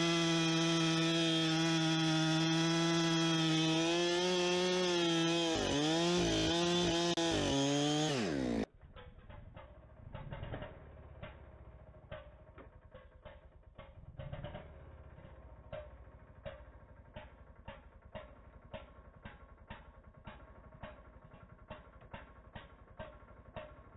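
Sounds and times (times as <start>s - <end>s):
chainsaw at full throttle: 0.0s - 8.7s, 14.2s - 15.9s.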